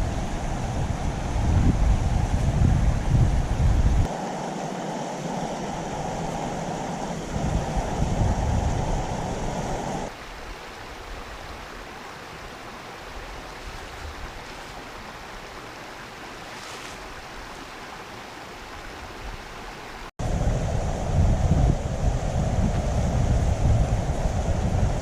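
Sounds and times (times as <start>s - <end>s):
wind buffeting microphone: 0.0s - 10.2s, 20.2s - 25.0s
river water flowing: 0.0s - 24.9s.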